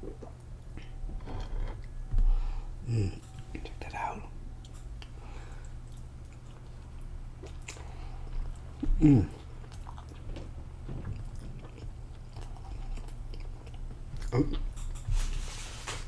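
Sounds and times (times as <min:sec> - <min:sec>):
chewing and biting food: 0:04.6 - 0:15.3
person humming mm: 0:08.9 - 0:09.4.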